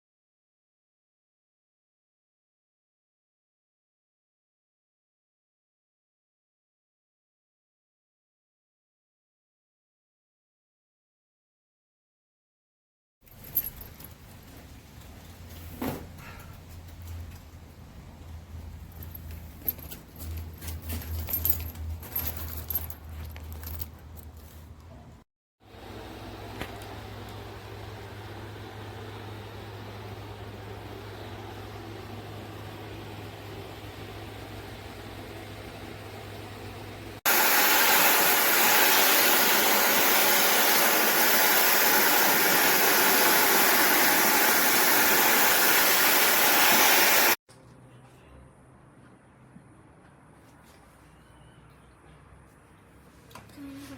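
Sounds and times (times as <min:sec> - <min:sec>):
wet dry vacuum running: 0:25.7 - 0:47.4.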